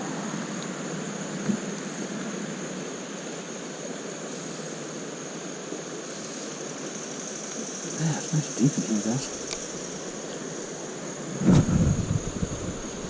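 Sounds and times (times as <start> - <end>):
creek water rushing: 0.0 - 13.0.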